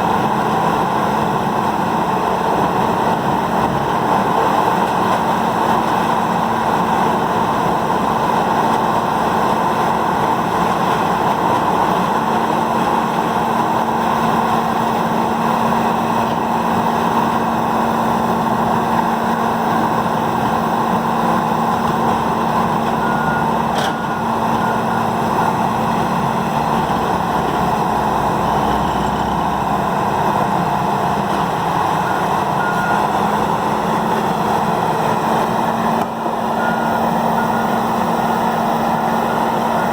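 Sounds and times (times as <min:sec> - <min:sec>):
faint backup alarm beeps: 0:32.0 - 0:33.1, 0:36.6 - 0:37.9.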